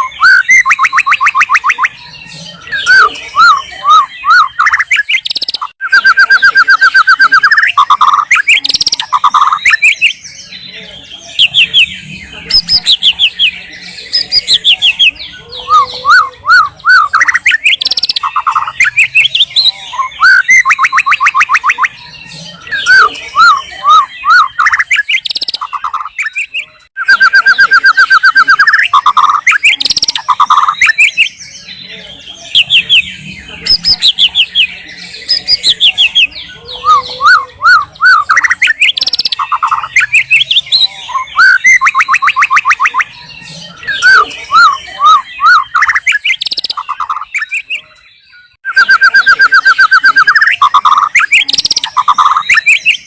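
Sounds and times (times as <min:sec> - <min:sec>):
songbird singing varied song: 0:00.0 - 0:53.0.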